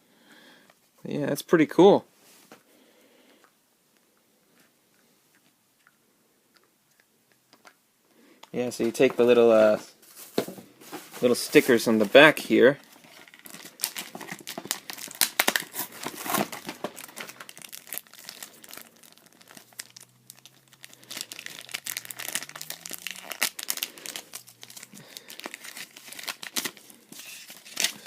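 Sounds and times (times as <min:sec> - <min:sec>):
plastic packaging crinkling: 0:08.8 - 0:28.0
plastic tearing: 0:12.8 - 0:28.0.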